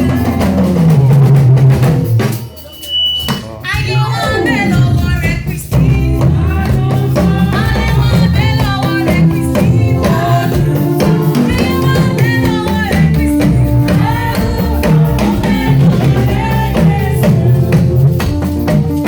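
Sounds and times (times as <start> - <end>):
low bass notes: 0.0 - 2.3, 3.5 - 19.0
drum kit: 0.0 - 19.0
person singing: 3.7 - 18.3.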